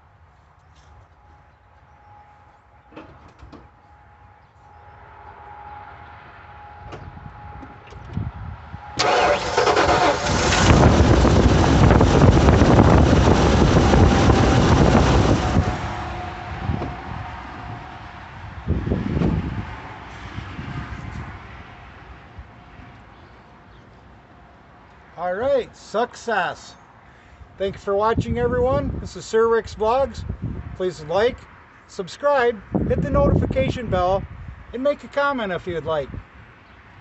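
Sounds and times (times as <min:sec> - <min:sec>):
truck engine starting and idling: 0:06.6 - 0:20.8.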